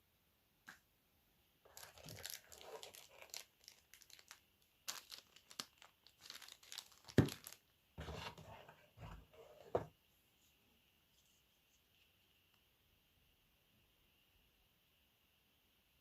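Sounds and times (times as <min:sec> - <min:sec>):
rustling and crinkling handling noise: 0:01.6 - 0:12.3.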